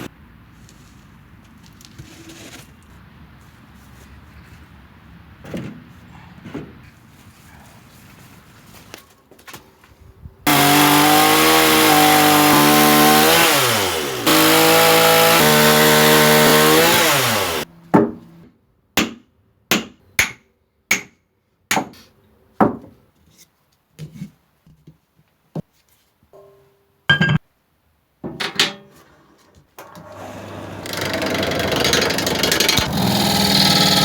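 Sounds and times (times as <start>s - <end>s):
chainsaw cutting wood: 10.5s - 17.7s, 30.0s - 34.0s.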